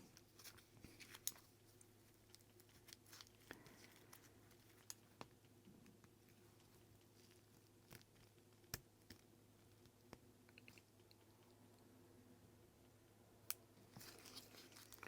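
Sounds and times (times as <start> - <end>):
small parts clicking and rustling: 0.0 - 5.5, 13.5 - 15.0
low steady hum: 0.0 - 15.0.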